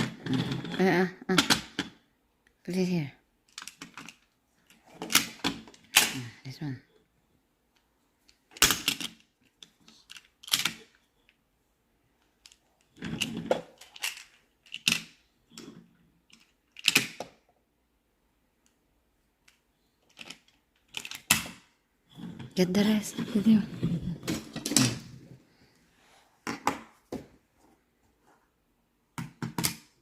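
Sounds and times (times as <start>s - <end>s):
plastic tiles clacking together: 12.4s - 15.7s, 16.3s - 17.3s.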